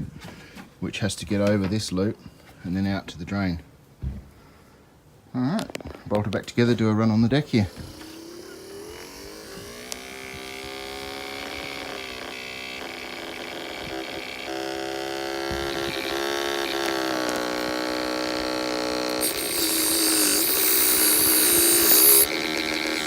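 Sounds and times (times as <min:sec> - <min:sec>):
drain pump motor humming: 0:07.4 - 0:23.0
hiss: 0:19.3 - 0:22.3.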